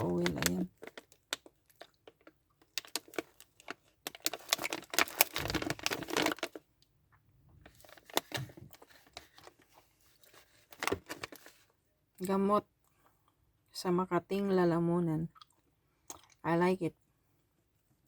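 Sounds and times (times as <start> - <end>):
packaging clicks and crinkles: 0.0 - 6.7, 7.6 - 11.6.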